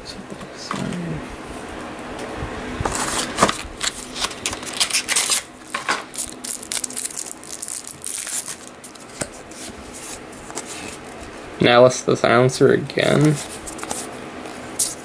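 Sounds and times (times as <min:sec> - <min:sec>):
trading cards flipped by hand: 0:13.2 - 0:14.1.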